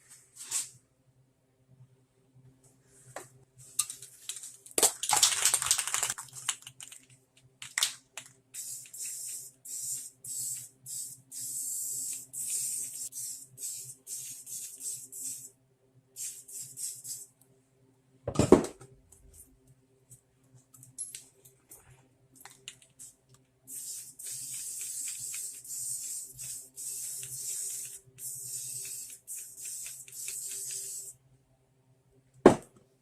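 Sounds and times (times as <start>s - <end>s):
spray paint can hissing: 8.6s - 15.5s, 16.2s - 17.3s, 23.7s - 31.1s.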